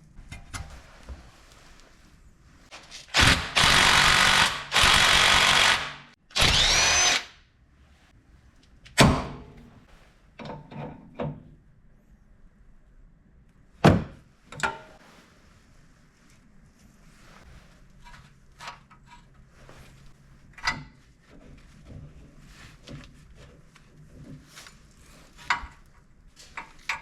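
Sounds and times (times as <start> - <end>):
power tool whining: 3.2 - 7.3.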